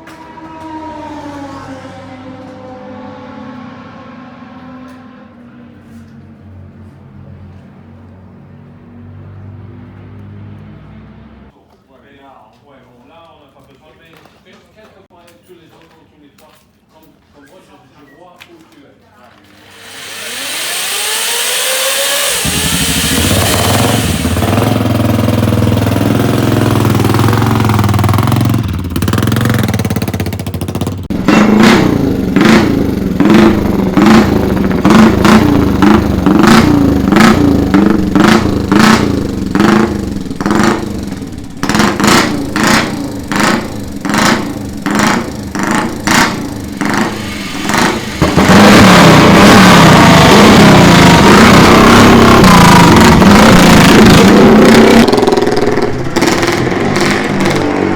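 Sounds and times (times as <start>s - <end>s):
motorcycle engine revving: 0.0s - 11.6s, 19.4s - 57.9s.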